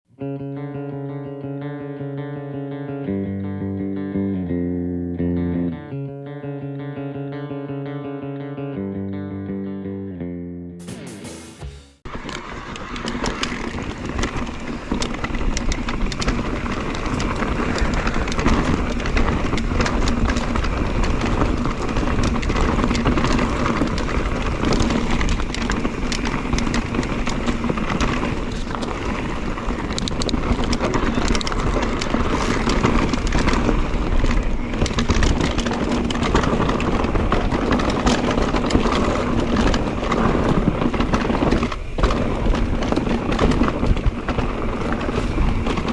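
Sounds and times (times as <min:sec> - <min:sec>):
tyres running over rocks: 0:12.1 - 0:45.9.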